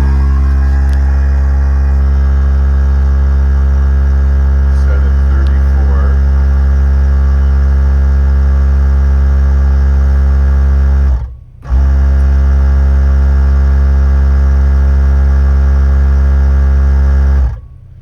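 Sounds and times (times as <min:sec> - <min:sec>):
air compressor humming: 0:00.0 - 0:11.0.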